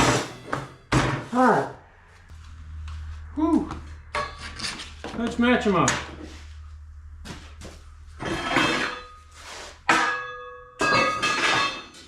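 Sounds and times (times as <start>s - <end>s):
steel clanking on metal: 4.1s - 5.0s, 8.2s - 12.0s.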